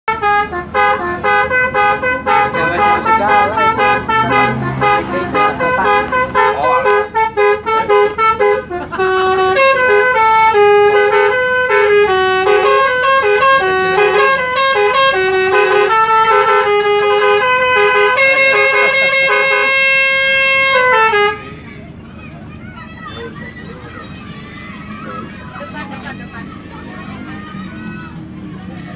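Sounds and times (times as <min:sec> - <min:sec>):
musical bus air horn: 0:00.1 - 0:21.6.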